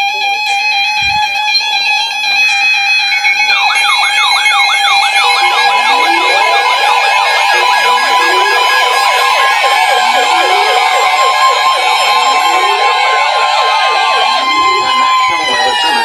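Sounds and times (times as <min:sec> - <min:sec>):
siren-like warble: 0:02.6 - 0:16.0
steady alert tones: 0:03.6 - 0:16.0.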